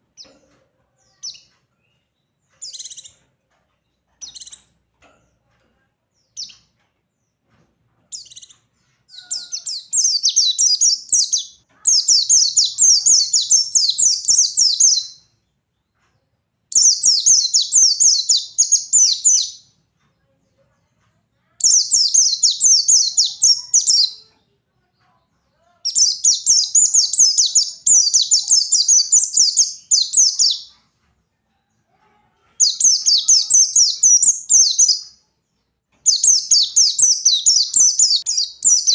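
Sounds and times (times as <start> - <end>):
white-eye bird singing: 1.1 - 3.2, 4.2 - 4.7, 8.1 - 15.3, 16.7 - 19.7, 21.6 - 24.2, 25.8 - 30.8, 32.6 - 35.2, 36.0 - 38.9.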